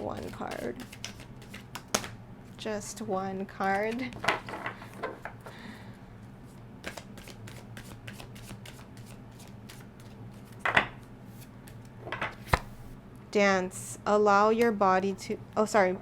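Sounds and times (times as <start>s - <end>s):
cards being shuffled: 0.0s - 2.2s, 3.7s - 4.6s, 6.8s - 13.0s
card slap: 12.4s - 12.9s.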